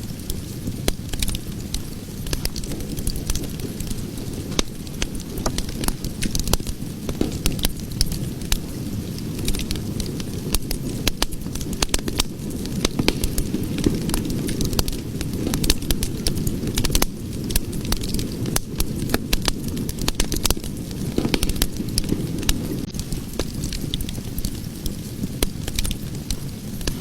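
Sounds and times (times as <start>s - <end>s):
fire burning: 0.0s - 27.0s
fire crackling and popping: 0.0s - 27.0s.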